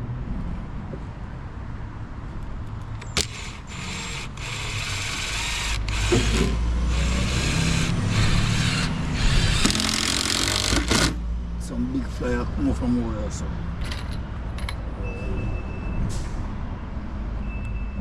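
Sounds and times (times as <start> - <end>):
power drill driving screws: 3.0 - 11.2.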